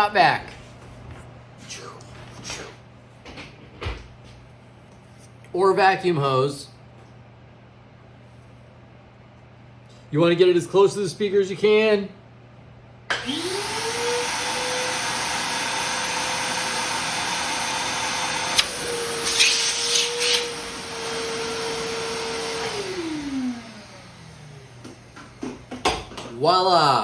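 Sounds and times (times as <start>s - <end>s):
shop vac motor whine: 13.1s - 26.3s.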